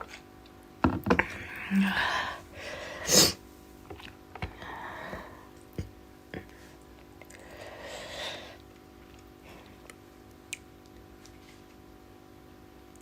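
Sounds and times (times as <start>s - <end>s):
person breathing softly: 1.3s - 3.1s, 4.5s - 5.6s, 6.4s - 8.6s.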